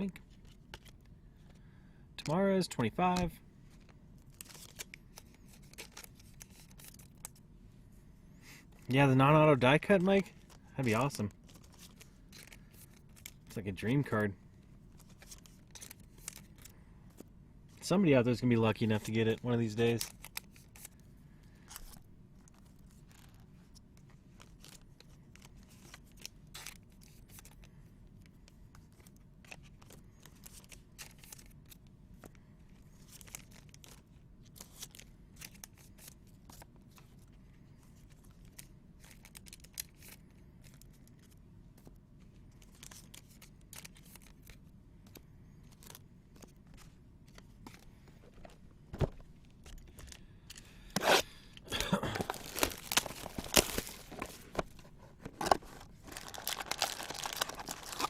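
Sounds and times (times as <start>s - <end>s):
low steady hum: 0.0s - 58.0s
cards rustling: 0.2s - 7.4s, 8.8s - 17.3s, 18.5s - 27.7s, 28.7s - 58.0s
card packs tearing and crinkling: 4.3s - 7.3s, 10.4s - 13.6s, 33.0s - 36.6s, 38.4s - 41.4s, 42.6s - 44.6s, 50.8s - 58.0s.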